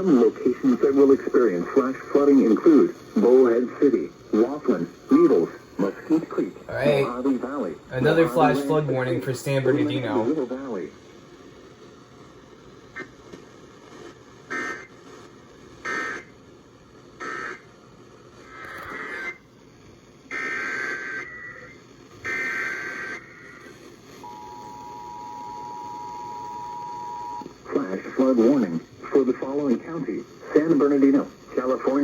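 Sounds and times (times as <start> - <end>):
two-tone attention signal: 24.3 - 27.4.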